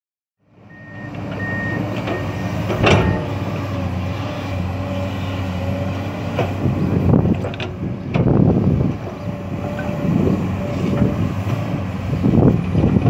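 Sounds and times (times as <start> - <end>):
diesel machinery running: 0.5 - 13.0
metal clank: 2.7 - 3.3.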